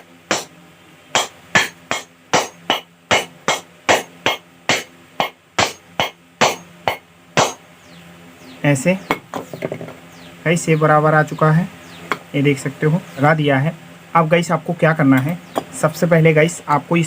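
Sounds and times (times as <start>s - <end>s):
small hammer tapping metal: 0.3s - 0.5s, 1.2s - 7.6s.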